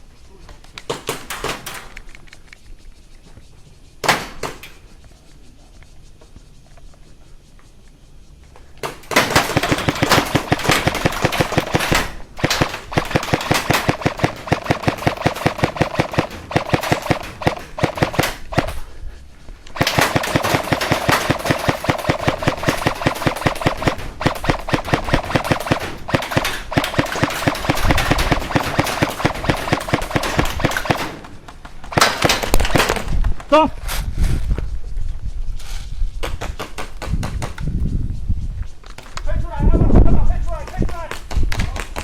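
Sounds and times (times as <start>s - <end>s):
airsoft guns firing full-auto: 8.8s - 18.8s, 19.8s - 33.1s
sharp single shot: 9.1s - 18.8s, 19.8s - 31.3s.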